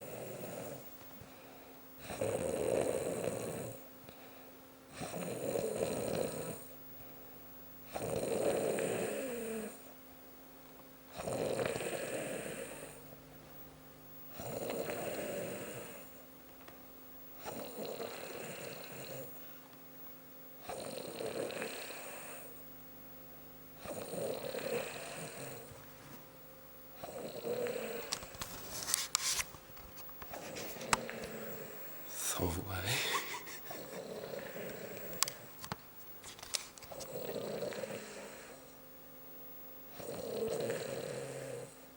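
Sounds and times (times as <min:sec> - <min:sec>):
woman snoring: 0:00.0 - 0:00.8, 0:02.1 - 0:03.8, 0:05.0 - 0:06.7, 0:08.0 - 0:09.9, 0:11.2 - 0:13.0, 0:14.4 - 0:16.1, 0:17.5 - 0:19.3, 0:20.7 - 0:22.5, 0:23.8 - 0:25.7, 0:27.0 - 0:28.3, 0:30.8 - 0:35.5, 0:37.0 - 0:38.7, 0:40.0 - 0:41.8
quiet breathing: 0:00.0 - 0:02.0, 0:04.0 - 0:05.2, 0:11.5 - 0:13.6, 0:14.3 - 0:16.2, 0:30.3 - 0:35.6, 0:36.6 - 0:38.8.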